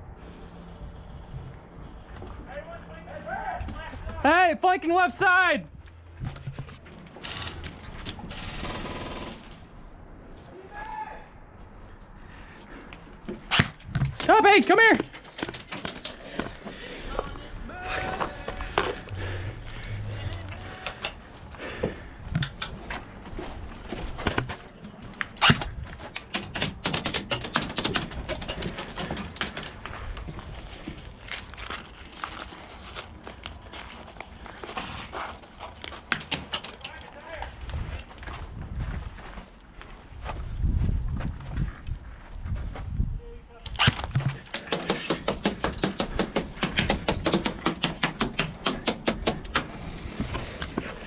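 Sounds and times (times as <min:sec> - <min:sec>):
airsoft guns firing: 0:44.4 - 0:49.6.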